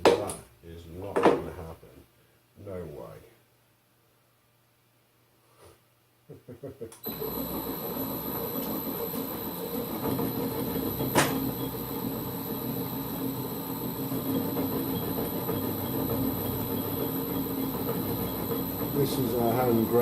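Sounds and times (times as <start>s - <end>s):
lathe humming with high whine: 7.0s - 20.0s.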